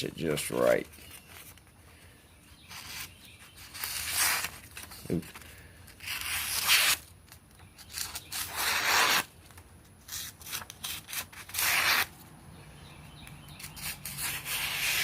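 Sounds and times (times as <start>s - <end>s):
knife slicing paper: 2.7s - 5.0s, 6.0s - 7.0s, 7.9s - 9.3s, 10.1s - 12.1s, 13.6s - 15.0s.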